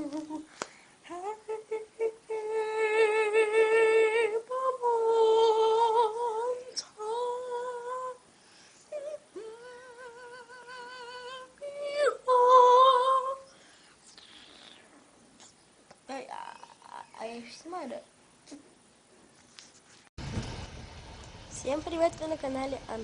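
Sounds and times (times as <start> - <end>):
girl humming a tune: 8.9 - 13.5.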